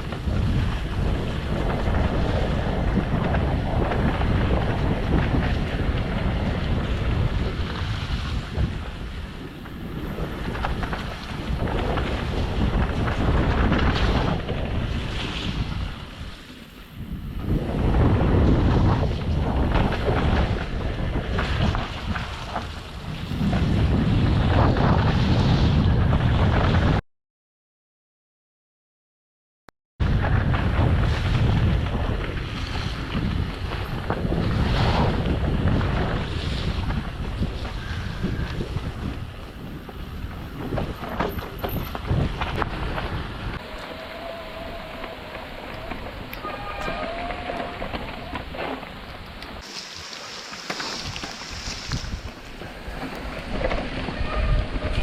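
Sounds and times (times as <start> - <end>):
wind buffeting microphone: 0.0 - 27.0, 30.0 - 55.0
bike knocking and rattling: 30.1 - 49.7
bike knocks and rattles: 39.8 - 43.2
tyres splashing through mud: 40.8 - 55.0.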